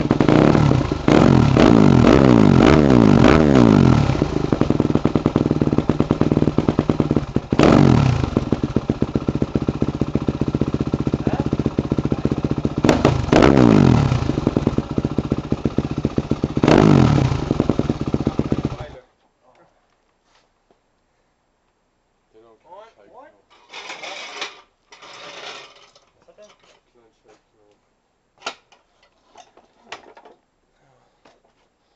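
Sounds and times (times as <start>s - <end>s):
motocross engine revving: 0.0s - 19.0s.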